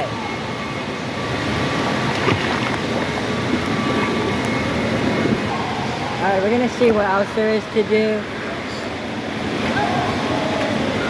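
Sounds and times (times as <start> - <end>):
rushing and splashing water: 0.0 - 11.0.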